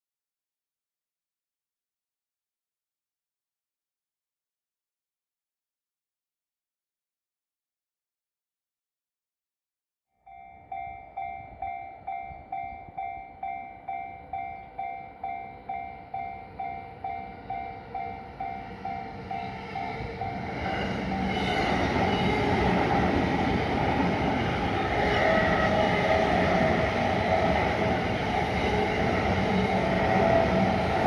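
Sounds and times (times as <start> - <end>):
electric train passing: 10.3 - 31.0.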